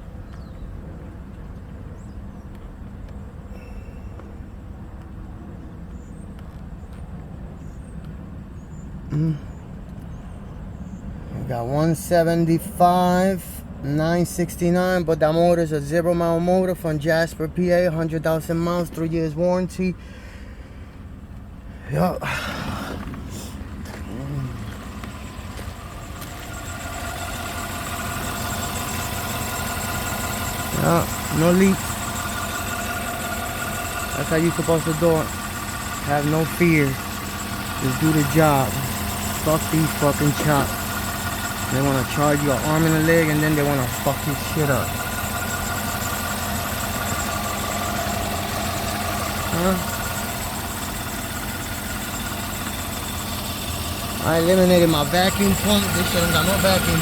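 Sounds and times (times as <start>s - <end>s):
car engine idling: 17.9s - 57.0s
faint steady whine: 18.9s - 57.0s.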